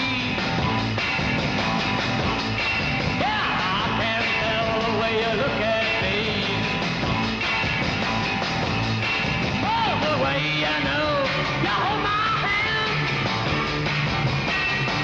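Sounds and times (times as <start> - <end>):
rock and roll band playing: 0.0 - 15.0
person singing: 3.2 - 6.8, 9.6 - 13.1.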